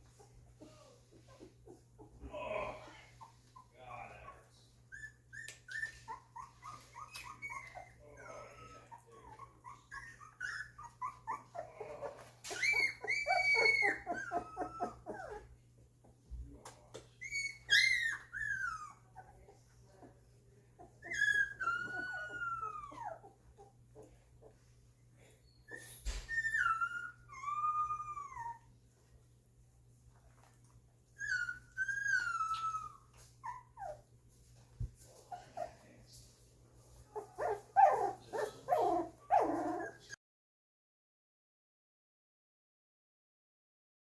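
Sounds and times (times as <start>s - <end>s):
puppies whimpering and squealing: 0.0s - 2.3s, 3.1s - 15.6s, 17.1s - 28.8s, 31.1s - 34.1s, 37.1s - 40.2s.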